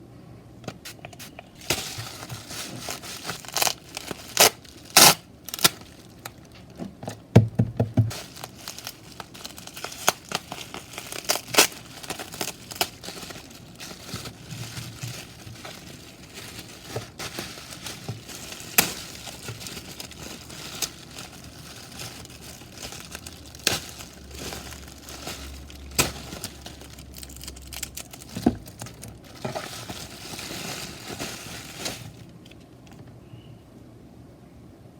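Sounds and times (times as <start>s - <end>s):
packaging crinkling and tearing: 0.7s - 7.3s, 8.1s - 33.0s.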